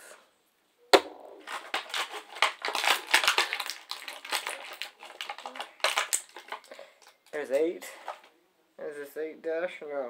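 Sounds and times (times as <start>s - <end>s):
plastic packaging crinkling: 1.4s - 8.3s.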